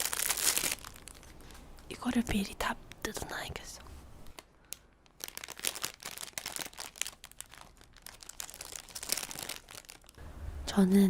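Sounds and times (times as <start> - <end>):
wrappers crackling and rustling: 0.0 - 1.6, 4.2 - 10.2.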